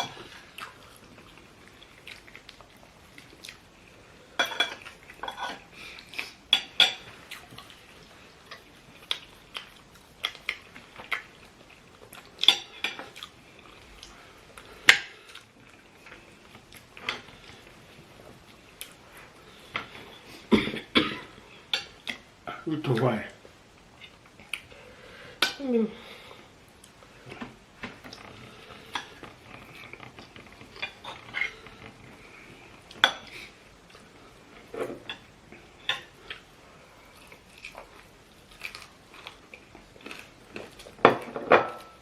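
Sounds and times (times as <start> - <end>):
cutlery clinking and scraping plates: 4.4 - 5.6.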